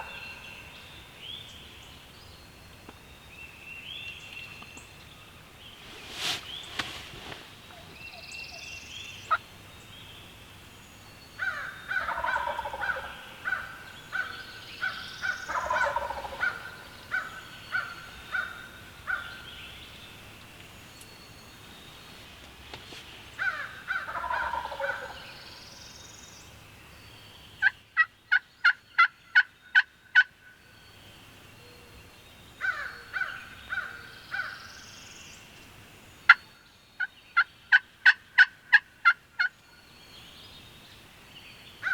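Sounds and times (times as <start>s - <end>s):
turkey gobbling: 12.0s - 13.1s, 15.5s - 16.6s, 24.0s - 25.2s, 37.4s - 39.5s.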